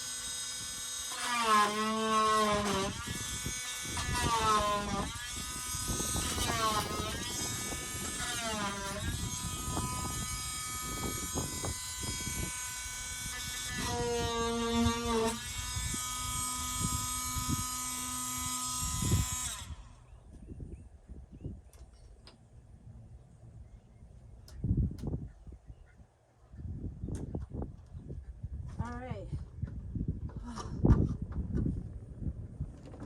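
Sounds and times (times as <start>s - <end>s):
small electric motor whining: 0.0s - 20.2s.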